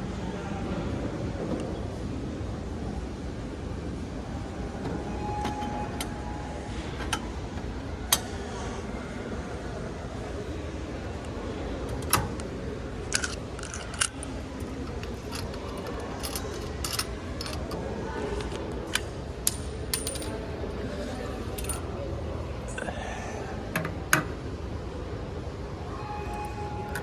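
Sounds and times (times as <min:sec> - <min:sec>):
machine hum: 0:03.9 - 0:09.1
coins clinking in a machine: 0:05.1 - 0:08.5, 0:11.8 - 0:17.9, 0:19.9 - 0:20.5, 0:21.5 - 0:21.8.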